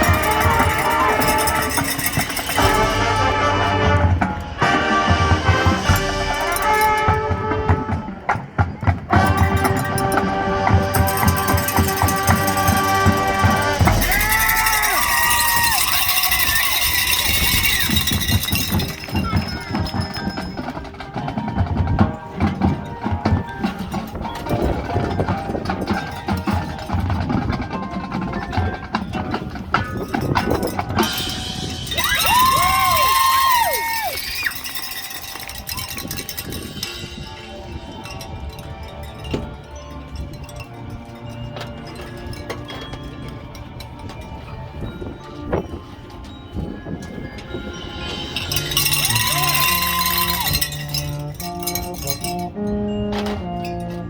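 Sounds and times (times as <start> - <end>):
wood block: 0.0 - 3.2, 8.8 - 40.6, 47.5 - 53.7
chimes: 0.0 - 3.8, 4.4 - 7.2, 9.2 - 54.0
crowd noise: 0.0 - 27.0, 30.6 - 52.5
low drums: 0.0 - 39.6
marching band playing: 0.0 - 43.1, 47.6 - 54.0
mallet keyboards: 0.0 - 54.0.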